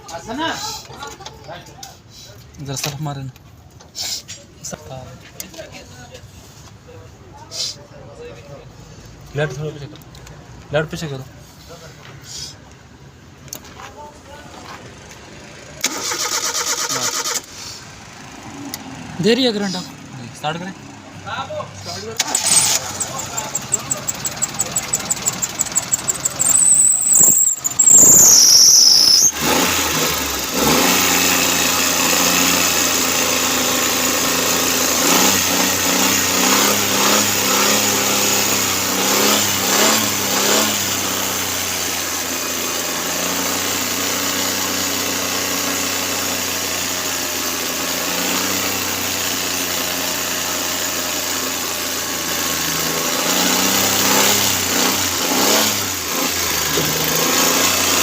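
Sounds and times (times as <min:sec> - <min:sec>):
car engine cranking and idling: 0:09.0 - 0:58.0
engine throttle blips: 0:22.2 - 0:30.5
high squeal falling in pitch: 0:23.6 - 0:29.4.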